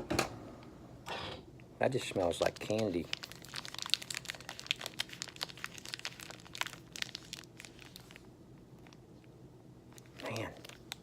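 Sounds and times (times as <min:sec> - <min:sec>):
wrapper crinkling: 0:02.2 - 0:09.0, 0:09.9 - 0:11.0.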